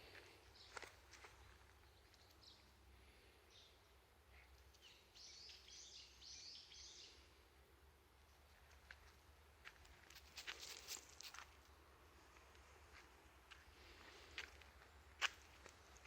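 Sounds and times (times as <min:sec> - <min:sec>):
bird chirps: 0:03.5 - 0:07.2.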